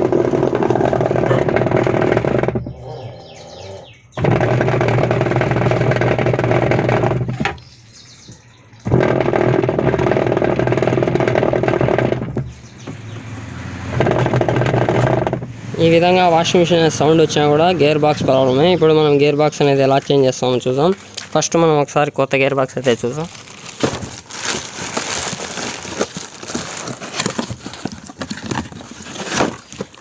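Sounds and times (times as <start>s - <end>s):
washing machine agitating loudly: 0.0s - 2.7s, 4.2s - 7.6s, 8.8s - 19.9s.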